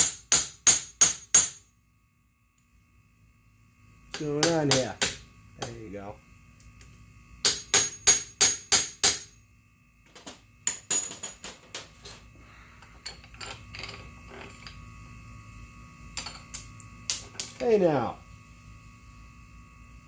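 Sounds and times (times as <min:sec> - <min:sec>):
hammer striking metal: 0:00.0 - 0:01.6, 0:07.4 - 0:09.4.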